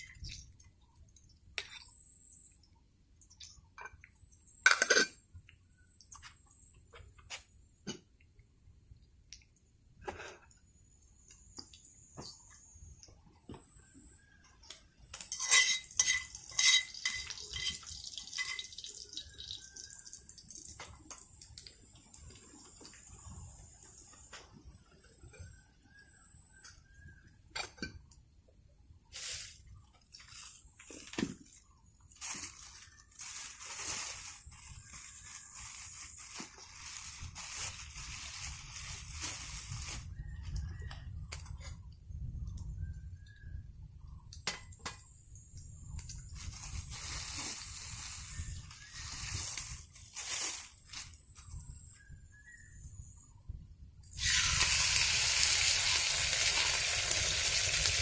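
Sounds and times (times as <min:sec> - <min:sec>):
food sizzling in pan: 0:54.2 - 0:58.0.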